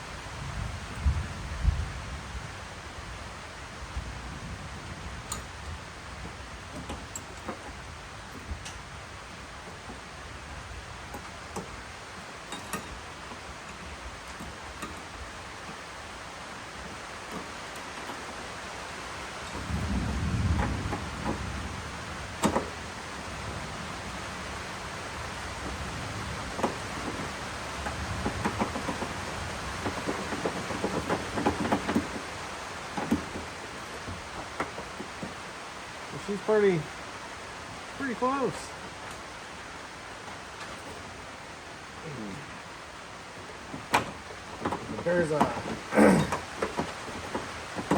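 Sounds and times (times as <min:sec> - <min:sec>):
steady background hiss: 0:00.0 - 0:47.9
small metal clicks and knocks: 0:05.2 - 0:10.1, 0:11.0 - 0:18.6, 0:22.4 - 0:22.8, 0:26.5 - 0:35.4, 0:43.6 - 0:47.9.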